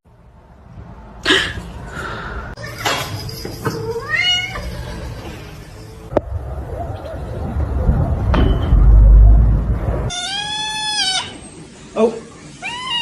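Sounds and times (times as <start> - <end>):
cat meowing: 3.8 - 4.9, 10.1 - 11.4, 12.6 - 13.0.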